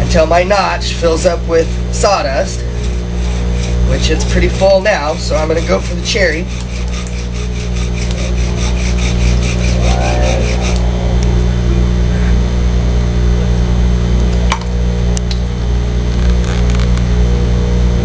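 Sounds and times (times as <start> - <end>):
bow drill spindle rubbing wood: 0.8 - 11.3.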